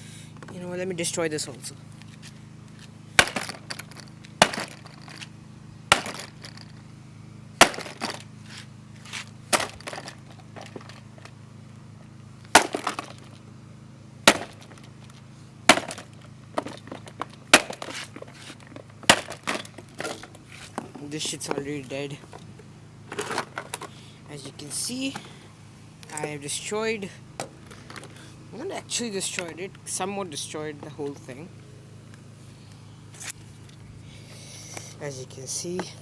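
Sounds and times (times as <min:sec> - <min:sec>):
hammer smashing coffee machine: 0:03.2 - 0:03.7, 0:04.4 - 0:05.1, 0:05.9 - 0:06.6, 0:07.6 - 0:08.2, 0:09.5 - 0:10.2, 0:12.5 - 0:13.2, 0:14.3 - 0:14.8, 0:15.7 - 0:16.8, 0:17.6 - 0:17.9, 0:19.0 - 0:20.2
breaking clatter of pieces: 0:03.2 - 0:05.3, 0:06.0 - 0:06.8, 0:09.5 - 0:11.0, 0:12.6 - 0:13.3.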